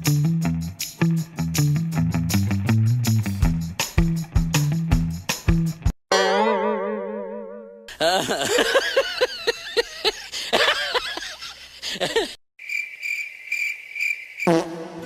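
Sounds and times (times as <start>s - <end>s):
cricket-like trill: 12.6s - 14.7s.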